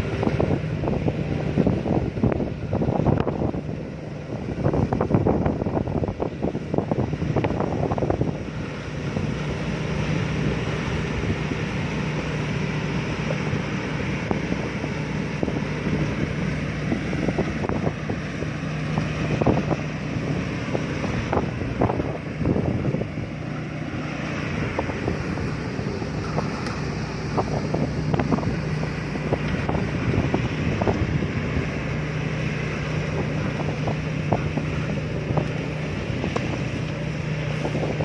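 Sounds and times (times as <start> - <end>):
combine harvester engine hum: 0.0 - 38.0
machinery rushing noise: 0.0 - 38.0
wind buffeting microphone: 0.0 - 38.0.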